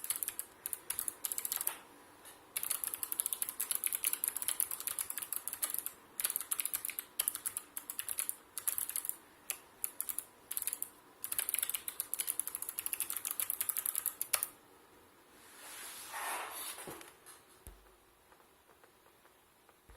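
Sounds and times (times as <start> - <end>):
clicky mechanical keyboard typing: 0.0 - 1.8, 2.6 - 14.6.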